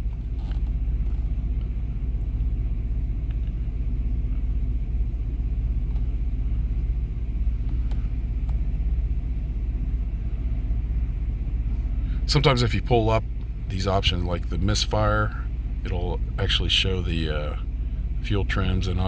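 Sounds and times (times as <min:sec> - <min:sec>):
pickup engine idling: 0:00.0 - 0:19.0.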